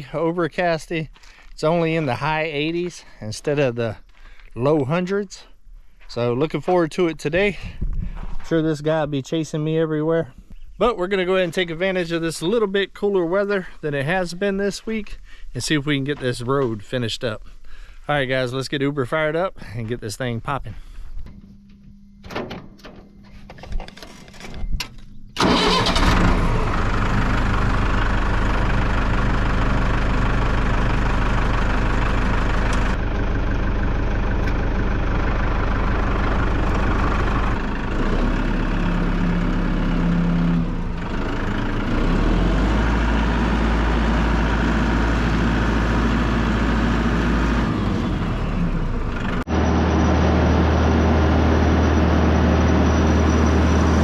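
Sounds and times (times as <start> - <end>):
tractor engine starting and running: 0.0 - 5.4, 21.2 - 54.0.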